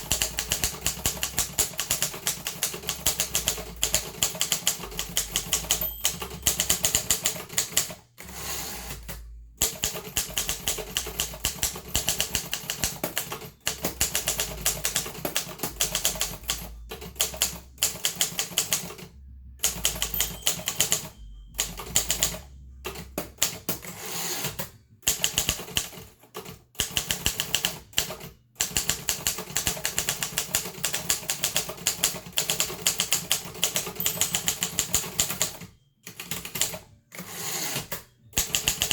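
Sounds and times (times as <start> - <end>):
typewriter key strikes: 0.0 - 7.9, 9.6 - 18.8, 25.0 - 25.9, 26.8 - 36.7, 38.4 - 38.9.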